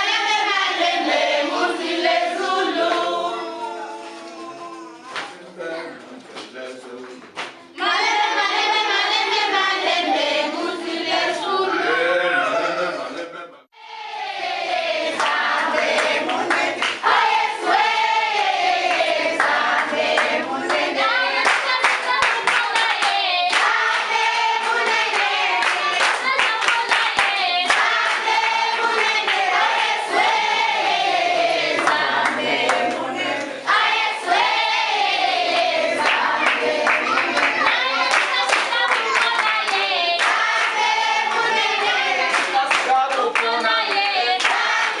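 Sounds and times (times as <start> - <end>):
choir singing: 0.0 - 4.3, 7.8 - 45.0
handclaps: 5.1 - 5.4, 6.4 - 7.7, 21.4 - 28.3, 36.0 - 41.5, 42.2 - 45.0.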